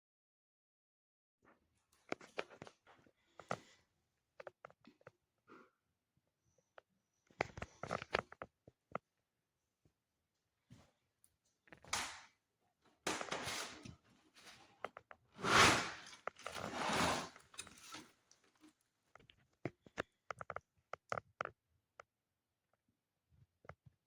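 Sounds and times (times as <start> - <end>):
rustling and handling noises: 12.9 - 21.3.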